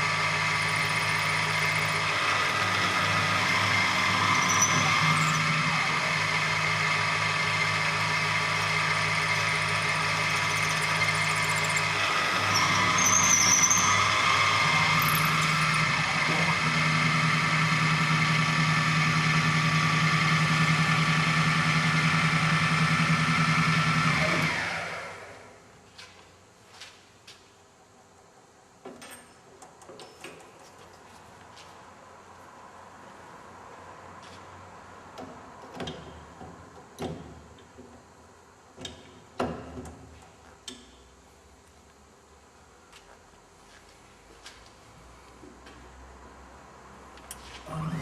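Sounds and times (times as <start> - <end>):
milling machine spindle whining: 0.0 - 25.5, 47.6 - 48.0.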